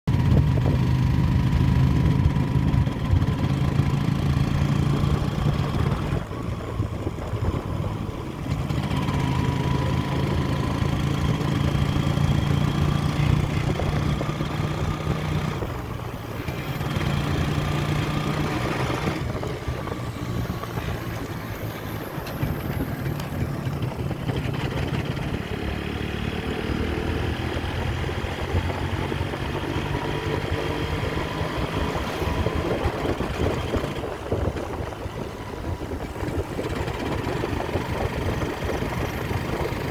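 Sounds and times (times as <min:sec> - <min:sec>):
motorcycle engine revving: 0:00.1 - 0:39.9.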